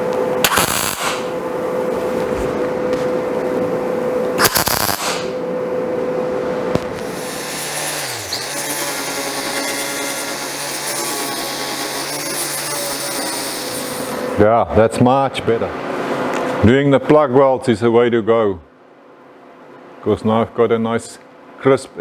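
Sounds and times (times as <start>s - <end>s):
electric drill drilling steel: 0.4s - 1.4s, 4.4s - 5.4s, 7.0s - 14.4s
loud noisy burst: 0.4s - 1.4s, 4.4s - 5.4s
low-pitched power tool with hiss: 0.4s - 1.4s, 4.4s - 5.4s, 7.0s - 14.4s.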